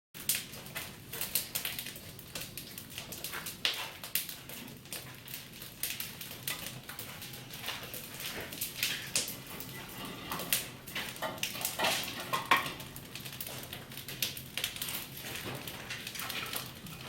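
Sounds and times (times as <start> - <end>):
firewood crackling and popping: 0.2 - 17.0.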